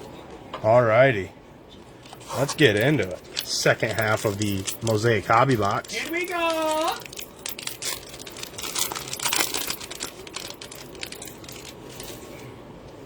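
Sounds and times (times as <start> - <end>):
wrapper torn and crinkled: 3.3 - 12.2.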